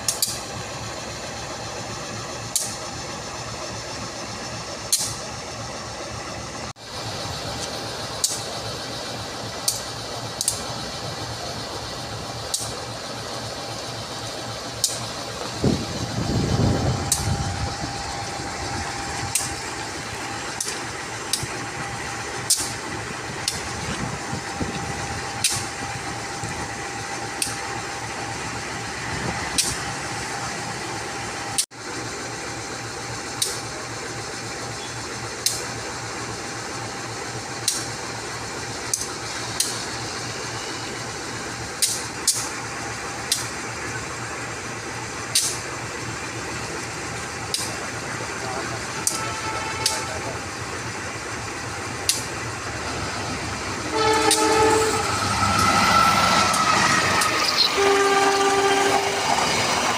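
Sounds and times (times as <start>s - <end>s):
diesel locomotive idling: 0.0s - 59.9s
sharp clicks: 9.6s - 10.7s, 49.0s - 50.0s, 55.4s - 57.7s.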